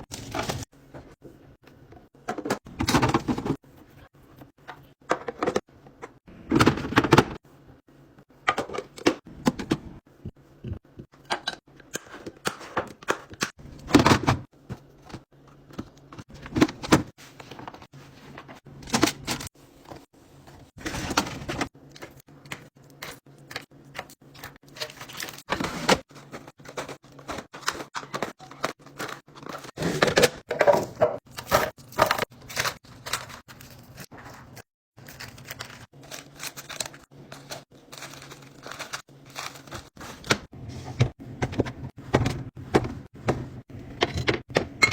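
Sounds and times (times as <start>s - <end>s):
food packages clacking and thunking: 2.0s - 3.7s, 10.6s - 44.9s
packaging rustling: 31.5s - 40.3s.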